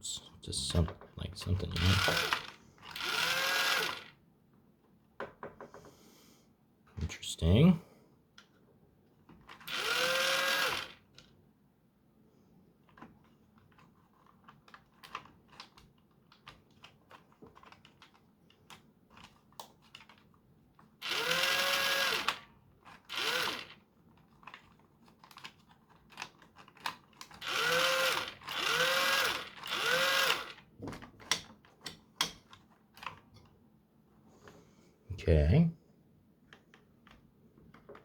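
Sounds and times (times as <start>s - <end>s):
small electric motor whirring: 1.7s - 4.1s, 9.6s - 11.0s, 21.0s - 23.8s, 27.3s - 30.6s
plastic parts clicking: 12.8s - 21.3s, 22.2s - 33.5s.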